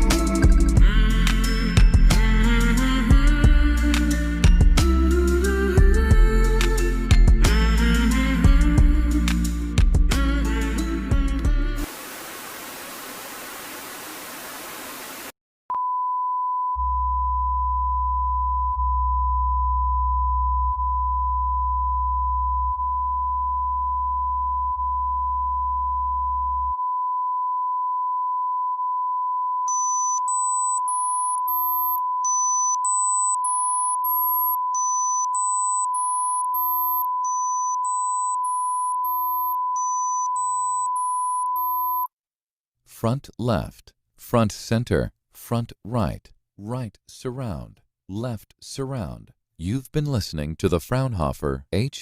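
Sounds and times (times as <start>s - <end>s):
noise hiss: 11.8s - 15.3s
deep low tone: 16.7s - 26.8s
high short beeps climbing: 29.7s - 42.1s.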